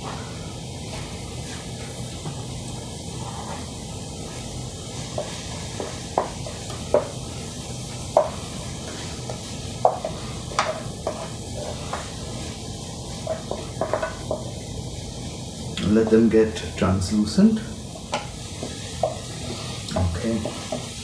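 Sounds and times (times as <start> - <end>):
onions sizzling in hot oil: 0.0 - 21.0
utensil scraping a pan: 8.2 - 14.6.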